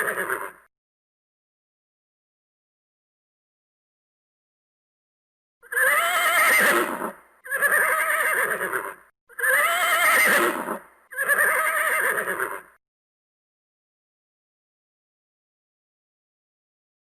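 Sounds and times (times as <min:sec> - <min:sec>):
horse neighing: 0:00.0 - 0:00.7, 0:05.6 - 0:12.8.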